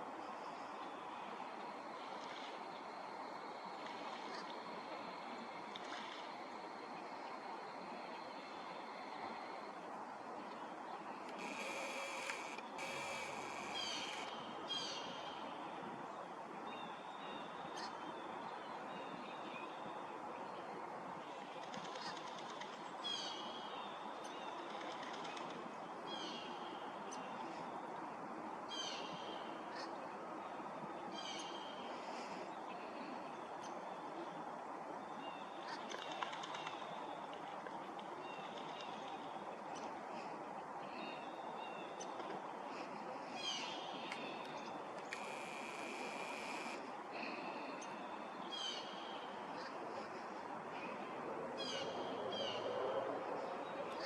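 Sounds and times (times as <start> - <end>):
steady background hiss: 0.0 - 52.6
harsh buzzing: 11.4 - 14.3, 45.1 - 46.8.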